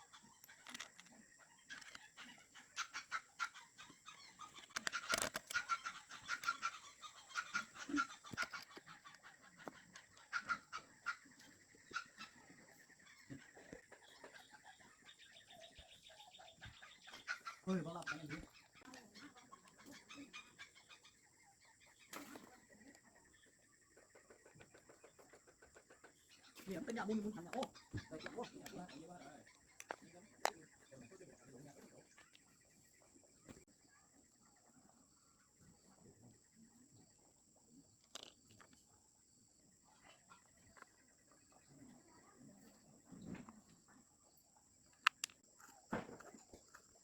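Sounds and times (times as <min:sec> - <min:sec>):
faint scattered clicks: 0:00.2 - 0:02.4, 0:04.1 - 0:10.4, 0:24.0 - 0:31.0, 0:38.0 - 0:38.9, 0:44.9 - 0:47.0.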